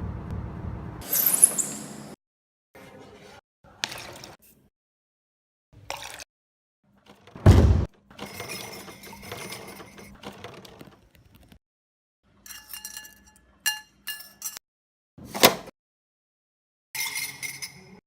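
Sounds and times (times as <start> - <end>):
short ringing clinks: 1.0 - 2.1
heavy thump: 7.4 - 7.9
sharp knock: 7.4 - 7.9.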